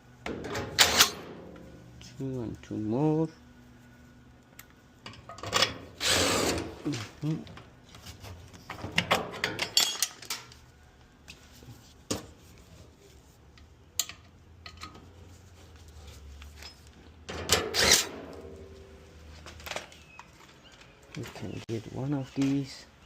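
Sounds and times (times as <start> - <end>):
metal parts clattering: 8.8 - 10.6.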